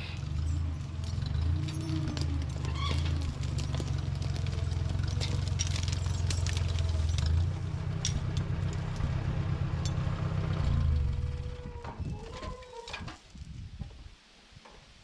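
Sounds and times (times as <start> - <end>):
engine rumbling: 0.0 - 13.4
light clattering and knocks: 1.0 - 10.2.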